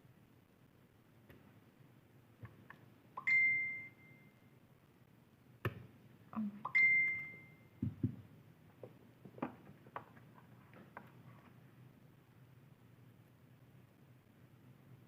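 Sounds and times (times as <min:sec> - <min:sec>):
short electronic dings: 0:03.2 - 0:04.4, 0:06.6 - 0:07.8.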